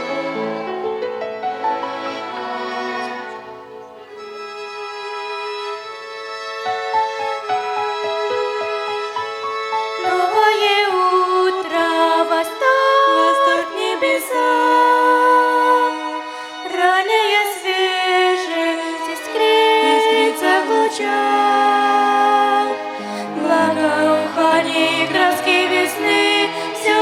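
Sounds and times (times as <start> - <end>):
violin ensemble slow melody: 0.0 - 27.0.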